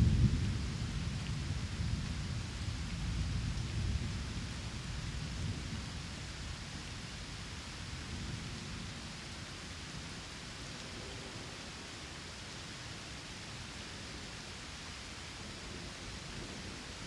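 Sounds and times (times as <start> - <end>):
low rumble of thunder: 0.0 - 9.2, 15.4 - 17.0
steady rain hiss: 0.0 - 17.0.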